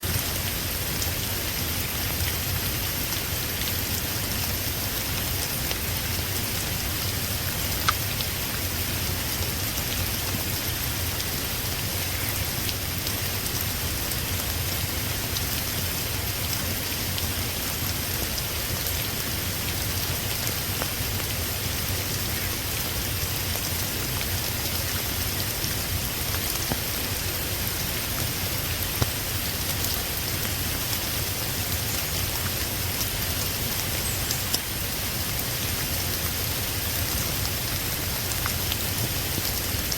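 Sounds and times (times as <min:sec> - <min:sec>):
steady rain hiss: 0:00.0 - 0:39.9.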